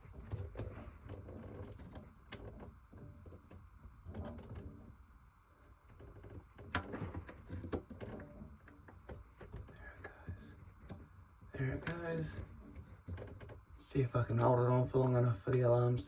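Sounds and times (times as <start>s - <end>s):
handling knocks and clicks: 5.8s - 13.7s.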